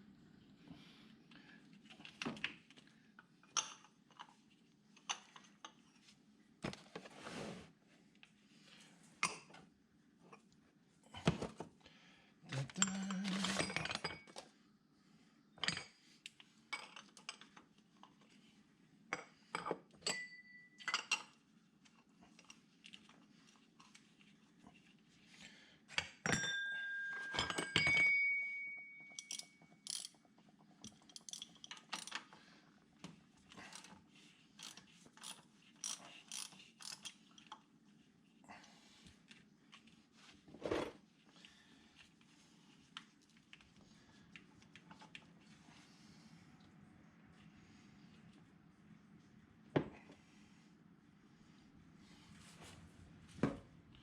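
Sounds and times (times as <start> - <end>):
metal hand tools clicking and clinking: 29.1 - 30.2, 30.8 - 32.2, 34.6 - 37.4.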